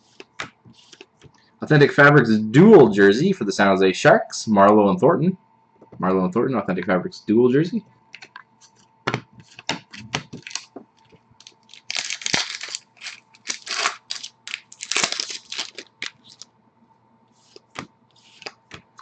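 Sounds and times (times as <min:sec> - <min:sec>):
wrapper tearing and crinkling: 0:10.3 - 0:10.7, 0:11.4 - 0:16.4.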